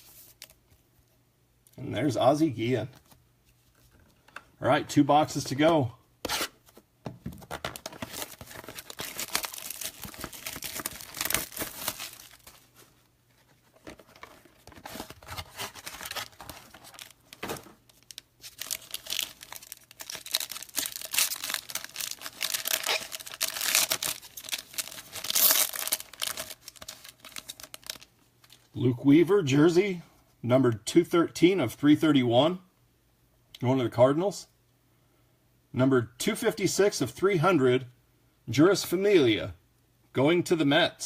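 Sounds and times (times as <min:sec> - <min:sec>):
plastic wrap crinkling and tearing: 0:07.5 - 0:12.8, 0:13.7 - 0:28.7.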